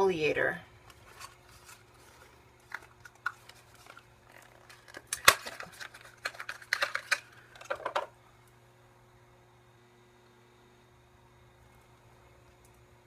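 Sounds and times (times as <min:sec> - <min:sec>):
packaging clicks and rustles: 0:00.9 - 0:08.1.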